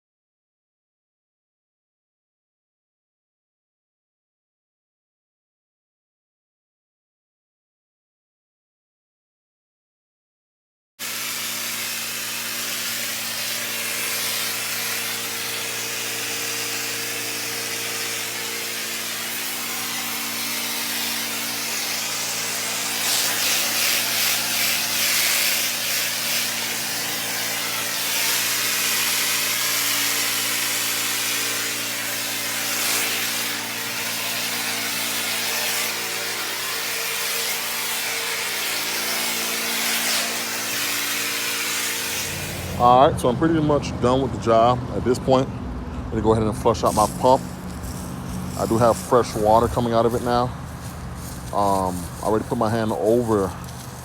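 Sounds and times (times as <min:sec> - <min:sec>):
high-pressure water spray hiss: 0:11.0 - 0:42.8, 0:46.8 - 0:54.0
pressure washer hum: 0:11.0 - 0:45.5, 0:46.2 - 0:54.0.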